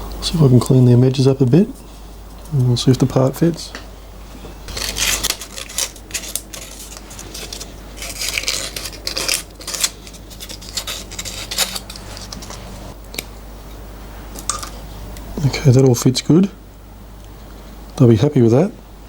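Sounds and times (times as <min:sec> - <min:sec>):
hand tool scraping metal: 0:04.7 - 0:12.9.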